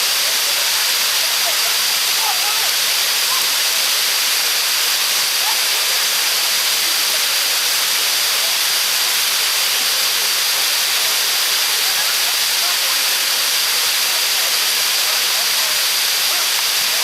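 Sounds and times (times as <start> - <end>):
river water pouring over dam: 0.0 - 17.0.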